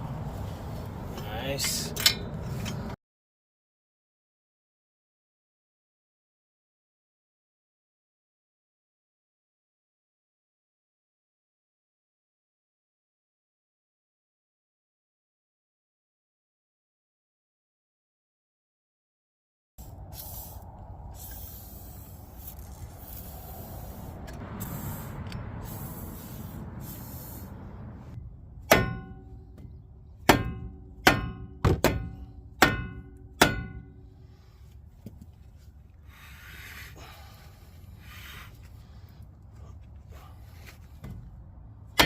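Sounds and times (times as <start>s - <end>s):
hammer striking metal: 28.6s - 34.0s.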